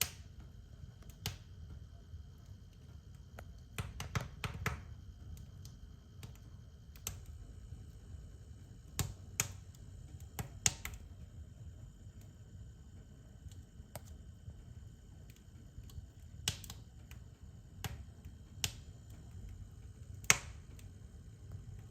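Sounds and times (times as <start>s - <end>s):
fire crackling: 0.0s - 21.9s
low steady rumble: 4.8s - 21.9s.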